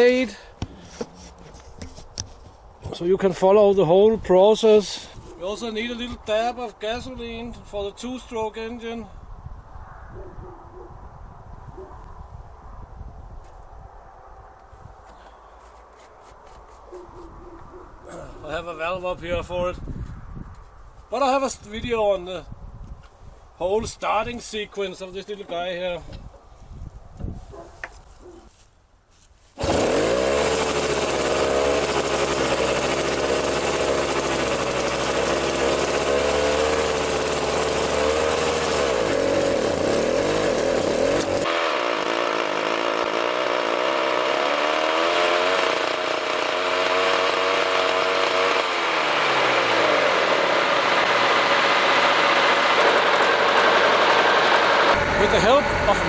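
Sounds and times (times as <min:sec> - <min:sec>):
starter engine revving: 0:29.6 - 0:56.0.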